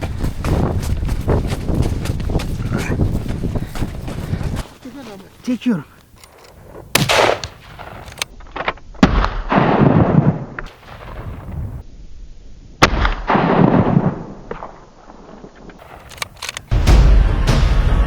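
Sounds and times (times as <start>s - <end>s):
gunshots with rolling echo: 6.9s - 8.3s.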